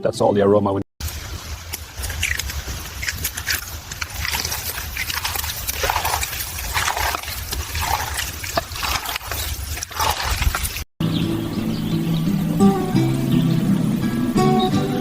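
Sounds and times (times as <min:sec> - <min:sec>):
wet squelching and sloshing: 0:01.0 - 0:10.9.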